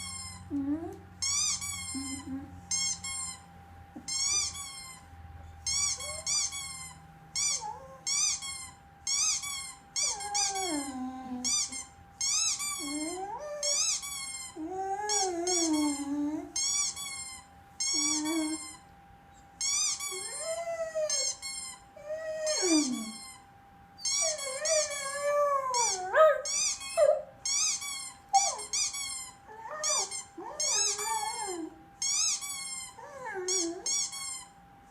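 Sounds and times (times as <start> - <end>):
dog howling and whining: 7.4 - 8.5, 9.9 - 17.0, 17.9 - 18.8, 20.0 - 23.4, 24.0 - 34.5.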